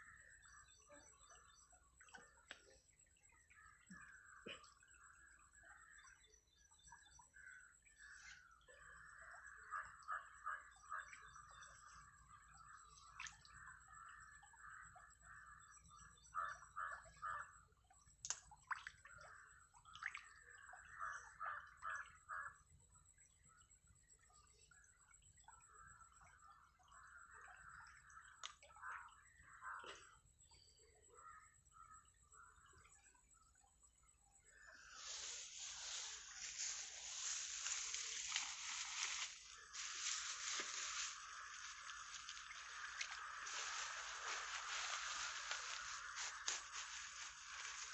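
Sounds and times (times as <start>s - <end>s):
water splashes: 18.2s - 21.0s, 34.5s - 47.9s.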